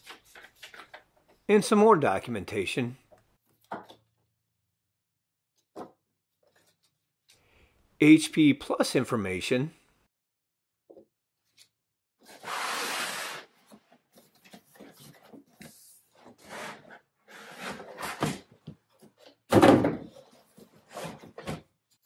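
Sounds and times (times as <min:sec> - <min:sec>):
sliding scrape: 0:16.2 - 0:18.3.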